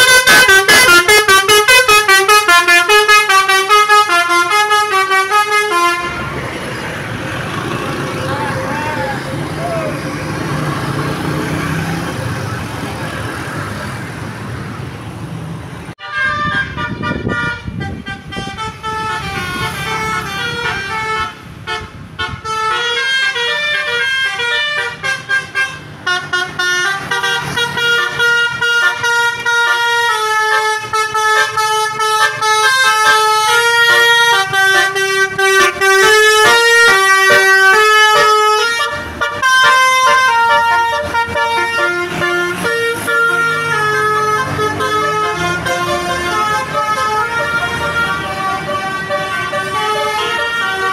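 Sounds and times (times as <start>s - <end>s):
multi-tone bus horn tune: 0.0s - 6.5s, 16.0s - 50.9s
noisy street sound: 0.0s - 50.9s
voices: 7.5s - 10.7s.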